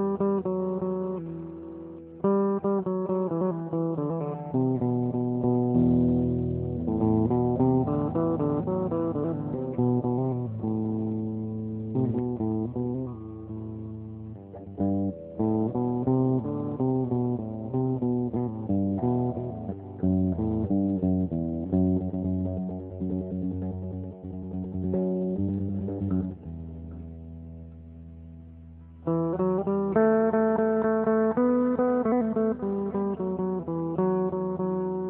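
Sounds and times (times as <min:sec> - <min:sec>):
plucked string melody: 0:00.0 - 0:35.0
low bass line: 0:04.0 - 0:30.6.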